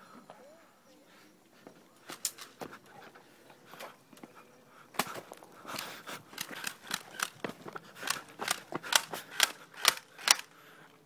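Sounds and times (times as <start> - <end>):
sharp clicks and crackles: 5.8 - 10.5.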